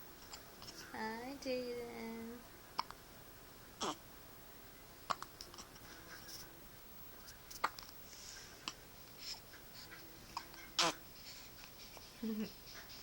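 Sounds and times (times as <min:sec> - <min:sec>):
baby hiccuping: 0:03.8 - 0:04.0, 0:10.8 - 0:11.0.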